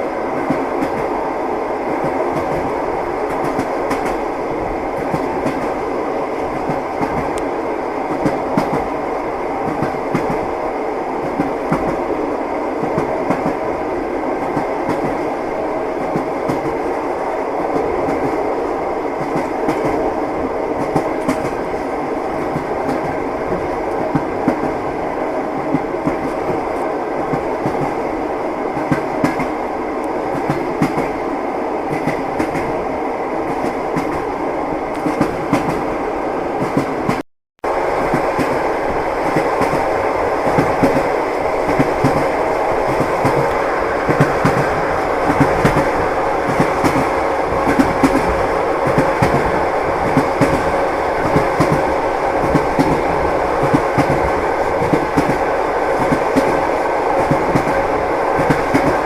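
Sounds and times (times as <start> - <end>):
train wheels clattering over rails: 4.9 - 5.8, 6.4 - 7.4, 37.8 - 59.0.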